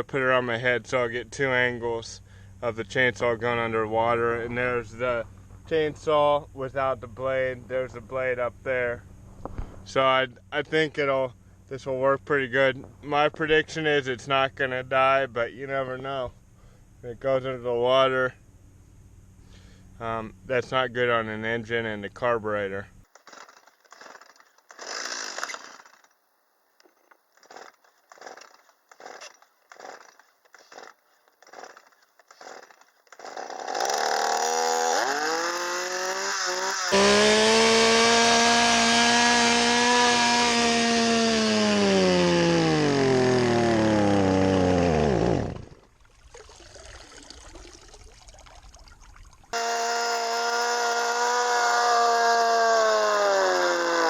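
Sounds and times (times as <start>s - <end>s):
chainsaw pull cord: 23.1s - 26.2s, 26.8s - 45.8s, 49.5s - 54.0s
chainsaw at full throttle: 24.0s - 26.0s, 27.4s - 45.8s, 49.5s - 54.0s
faint splashing: 45.5s - 49.6s.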